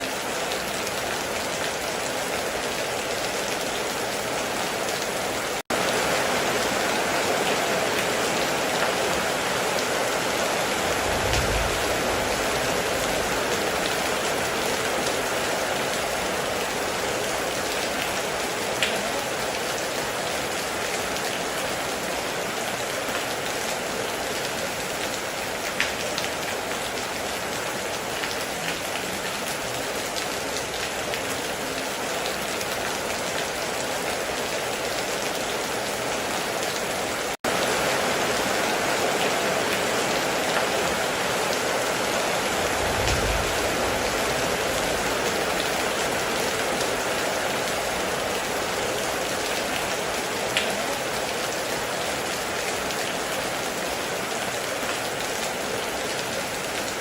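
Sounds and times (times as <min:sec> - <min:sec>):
heavy rain pouring: 0:00.0 - 0:57.0
low rumble: 0:11.0 - 0:12.5, 0:42.7 - 0:44.8.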